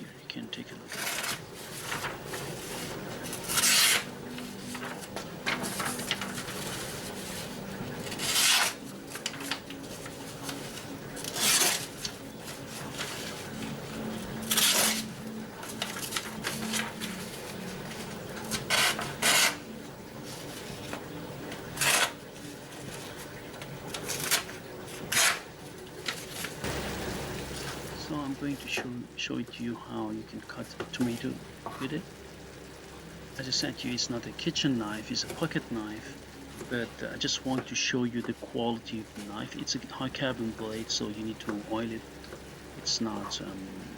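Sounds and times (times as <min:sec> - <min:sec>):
knife slicing through paper: 0:00.9 - 0:04.1, 0:04.7 - 0:13.6, 0:23.9 - 0:26.7.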